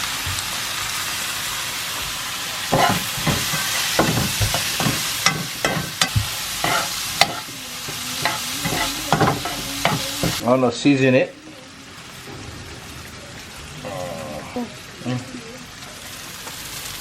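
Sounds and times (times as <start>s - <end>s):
meat sizzling in a pot: 0.0s - 17.0s
spoon scraping against pot: 2.7s - 10.4s.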